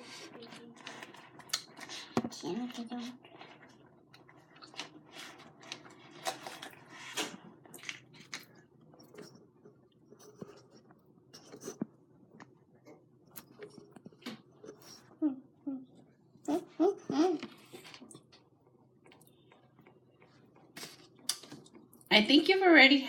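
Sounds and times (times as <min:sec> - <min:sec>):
food being chewed: 0:00.0 - 0:15.2, 0:16.0 - 0:22.1
wet mouth clicks and smacks: 0:21.2 - 0:21.7.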